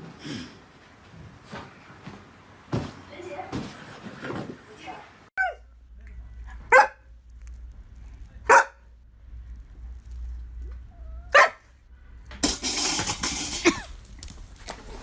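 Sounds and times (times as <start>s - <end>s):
dog barking: 6.7s - 7.1s, 8.4s - 8.9s, 11.3s - 11.7s.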